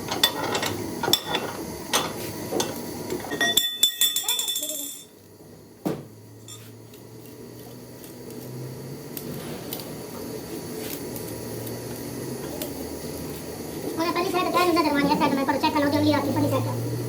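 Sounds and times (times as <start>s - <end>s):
faint clinks: 3.3s - 5.1s, 6.4s - 6.7s.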